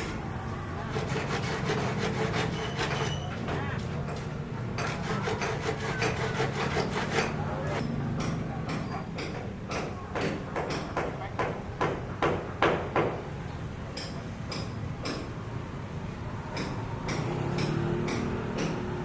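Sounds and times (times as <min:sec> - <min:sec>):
scraping and rubbing: 0:00.8 - 0:07.8.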